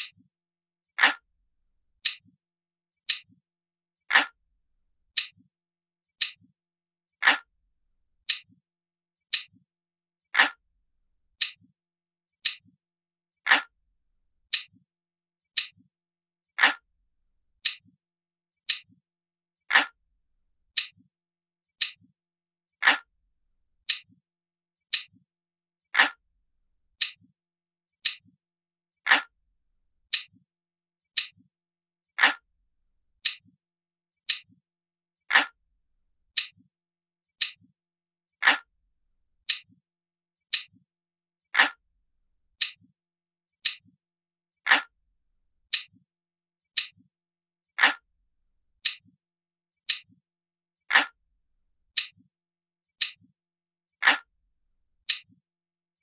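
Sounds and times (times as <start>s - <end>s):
clock ticking: 0.0s - 0.3s.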